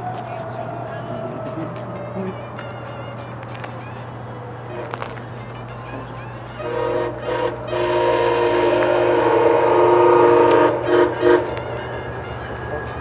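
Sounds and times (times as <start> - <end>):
train air horn blasts: 4.7 - 5.0, 6.5 - 13.0.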